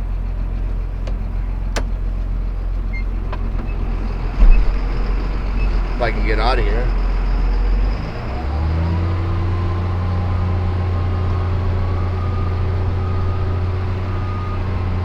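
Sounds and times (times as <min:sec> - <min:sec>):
faint whine: 0:00.0 - 0:08.3
tractor engine under load: 0:00.0 - 0:15.0.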